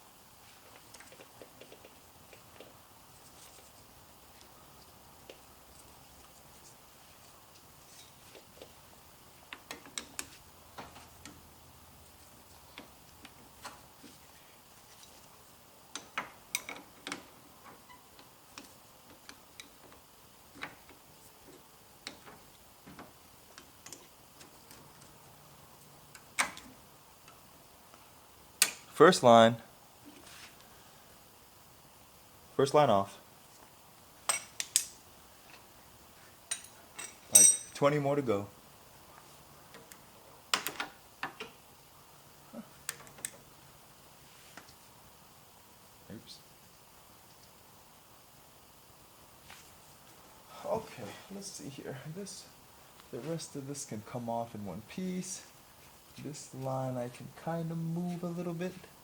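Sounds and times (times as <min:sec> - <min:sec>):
metallic clicks of hand tools: 0:34.3 - 0:35.0.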